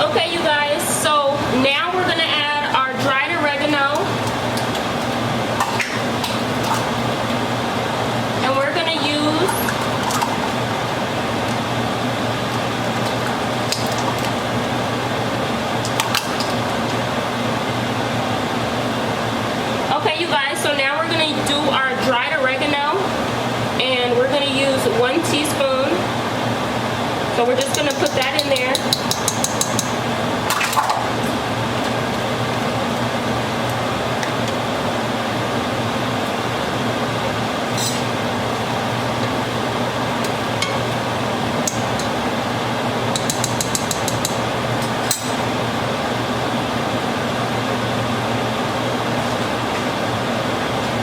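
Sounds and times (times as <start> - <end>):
utensil clicking against pot: 27.6 - 30.0, 41.6 - 42.2, 43.1 - 44.4.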